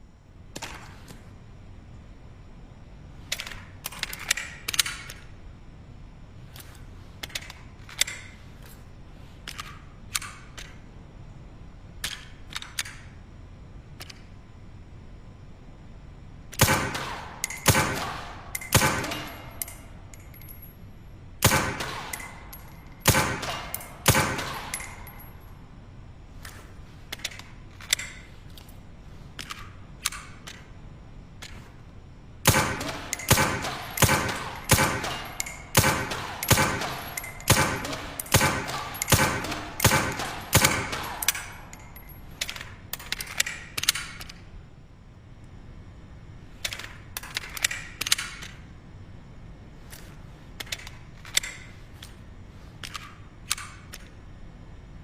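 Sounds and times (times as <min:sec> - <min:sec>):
suppressed pistol shots: 0:16.6 - 0:19.7, 0:21.4 - 0:22.4, 0:23.0 - 0:25.0, 0:32.4 - 0:41.6.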